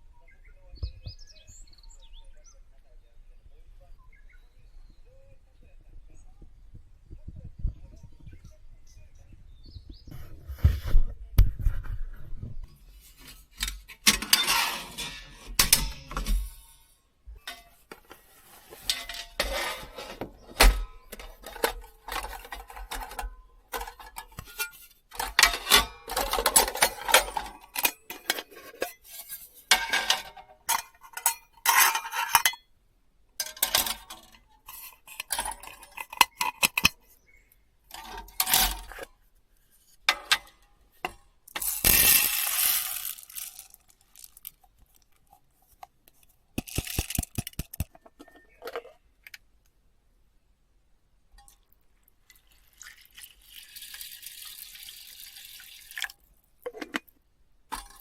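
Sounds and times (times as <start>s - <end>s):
dishes and cutlery clattering: 13.2s - 16.8s, 17.5s - 18.1s, 18.7s - 32.7s, 33.4s - 37.0s, 40.1s - 42.3s.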